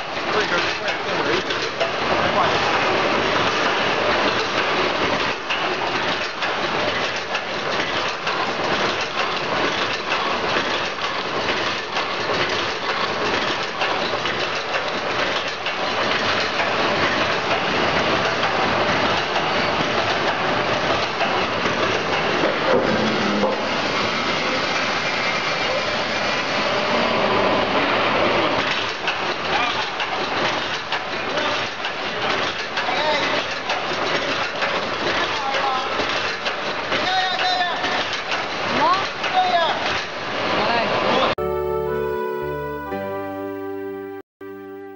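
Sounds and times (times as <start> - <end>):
welding machine clattering: 0.0 - 22.6, 28.6 - 40.2.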